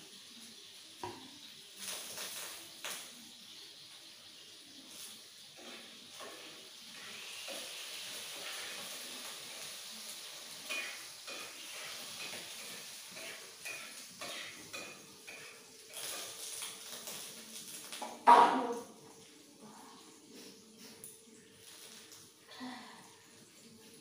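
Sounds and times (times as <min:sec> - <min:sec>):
food sizzling in a pan: 0:00.0 - 0:24.0
metal spatula scraping a pan: 0:05.6 - 0:09.0, 0:10.6 - 0:17.2.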